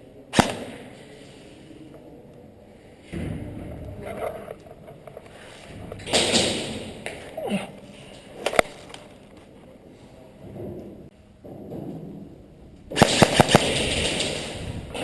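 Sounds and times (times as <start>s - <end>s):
airsoft gun cracks: 0.3s - 0.8s, 13.0s - 14.6s.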